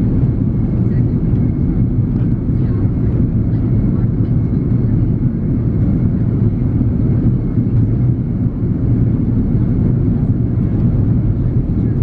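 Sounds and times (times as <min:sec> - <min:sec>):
airplane cabin drone: 0:00.0 - 0:12.0.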